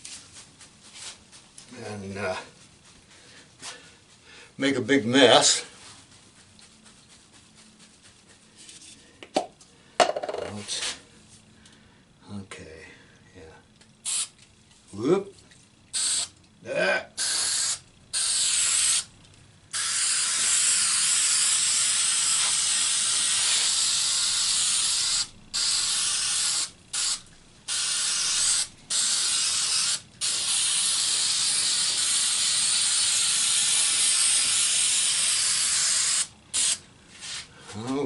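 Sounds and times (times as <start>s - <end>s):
aerosol can spraying: 14.0s - 14.4s, 16.0s - 16.3s, 17.2s - 19.1s, 19.7s - 37.5s.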